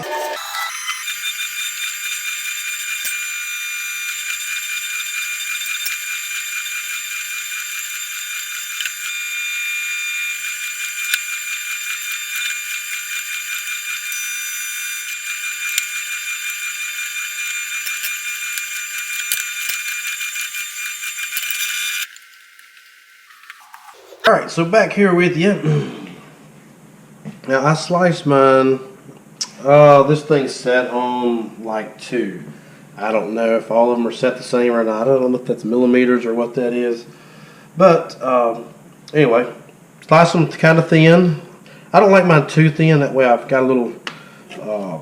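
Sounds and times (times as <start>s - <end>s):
electric meat slicer whining: 0.0s - 24.2s
slicer ticking: 0.4s - 23.6s.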